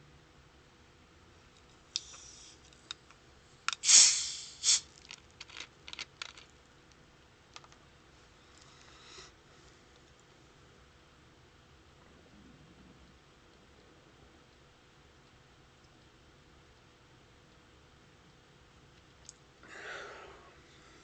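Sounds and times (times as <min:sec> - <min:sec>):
can opening fizzing hiss: 0:03.7 - 0:05.0.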